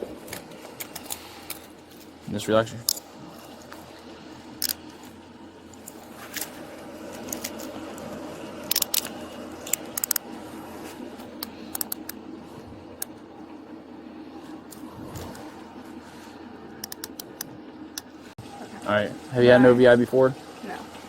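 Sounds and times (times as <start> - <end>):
steady background noise: 0.0 - 21.0
handcuffs ratcheting clicks: 8.7 - 9.1, 9.7 - 10.2, 11.4 - 12.1, 16.8 - 17.5.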